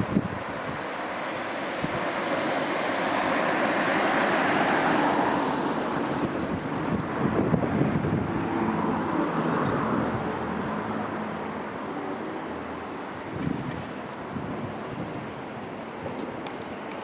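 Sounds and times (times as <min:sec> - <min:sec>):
train rolling on track: 0:15.9 - 0:17.0.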